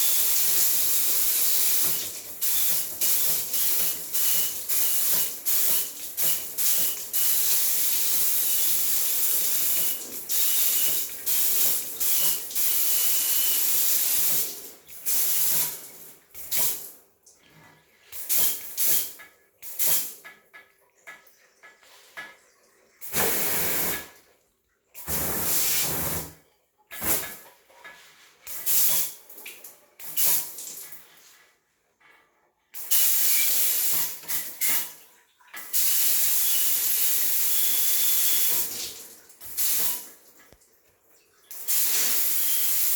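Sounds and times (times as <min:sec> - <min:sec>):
water spray hissing: 0:23.0 - 0:24.1, 0:25.0 - 0:26.4.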